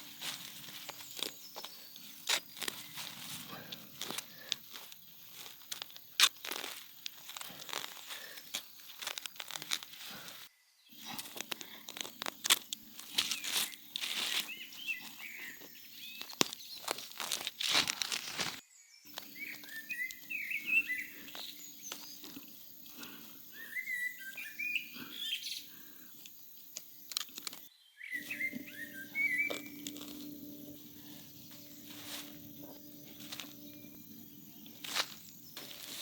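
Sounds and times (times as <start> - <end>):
small birds chirping: 0.0 - 36.0
steady low hum: 28.2 - 36.0.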